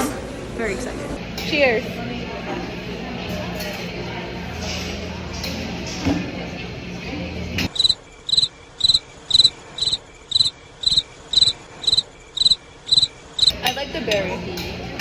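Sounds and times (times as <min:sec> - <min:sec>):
room noise: 0:00.0 - 0:08.0
cricket chirping: 0:07.7 - 0:13.5.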